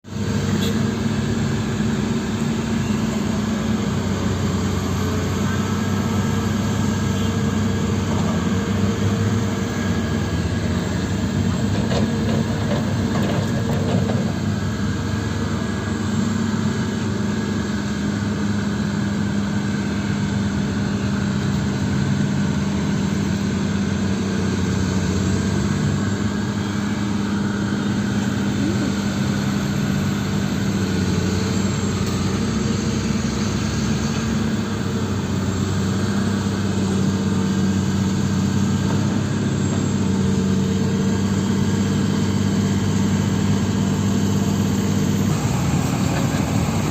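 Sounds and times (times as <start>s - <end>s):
diesel machinery engine drone: 0.0s - 46.9s.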